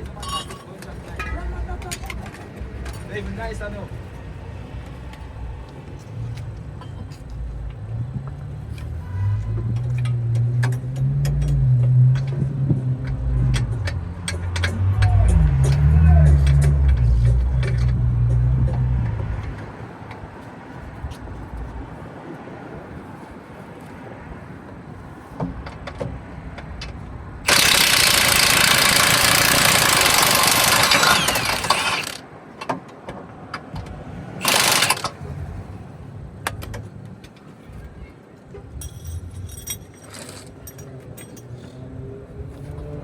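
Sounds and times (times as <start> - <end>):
engine running: 27.4 - 32.2, 34.4 - 35.6.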